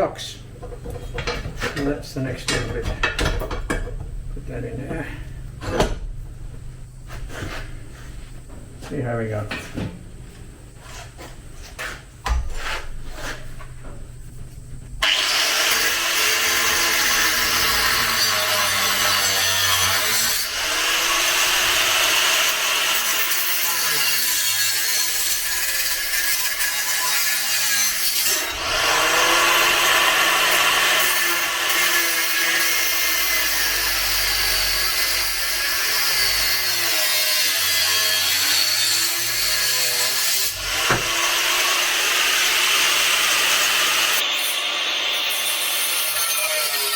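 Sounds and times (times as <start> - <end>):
power tool cutting steel: 15.0 - 46.9.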